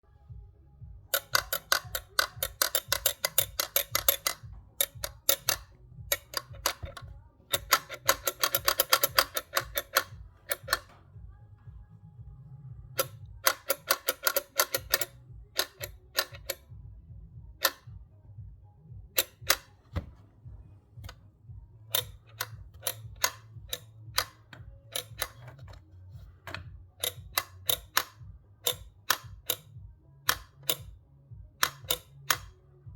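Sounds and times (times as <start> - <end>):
low steady hum: 0.0 - 32.9
metal rod knocking on gearbox: 1.1 - 11.0, 13.0 - 16.6, 17.6 - 17.9, 19.2 - 20.2, 21.9 - 31.0, 31.6 - 32.6.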